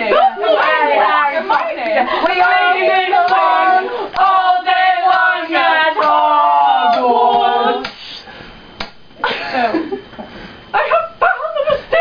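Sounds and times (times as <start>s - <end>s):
young female voices singing: 0.0s - 8.0s.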